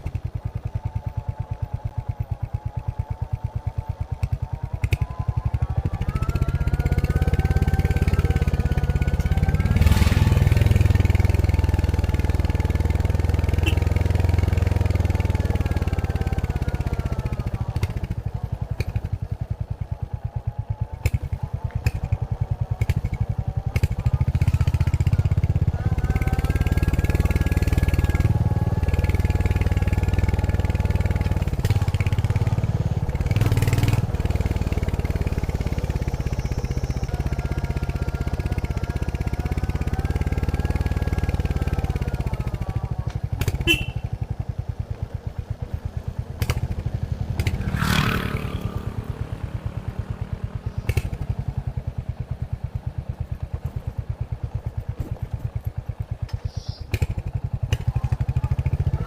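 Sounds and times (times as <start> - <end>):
motorcycle engine thumping: 50.1 - 51.5, 54.6 - 58.3.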